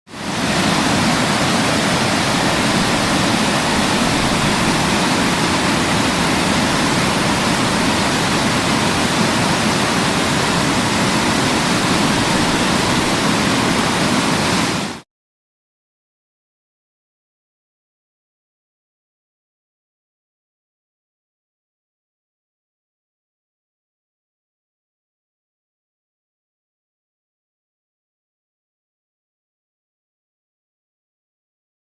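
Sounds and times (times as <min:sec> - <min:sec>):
waterfall rushing: 0:00.1 - 0:15.0.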